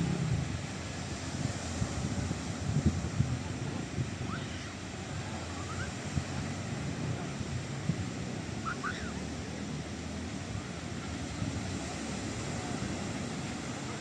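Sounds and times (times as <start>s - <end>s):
surf washing onto beach: 0.0s - 14.0s
wind buffeting microphone: 0.0s - 14.0s.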